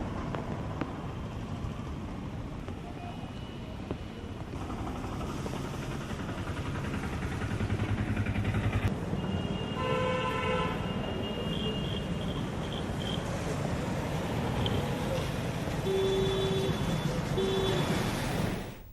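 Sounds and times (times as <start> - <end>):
vehicle engine running: 4.6 - 8.9
vehicle horn: 9.4 - 12.2, 15.8 - 18.0.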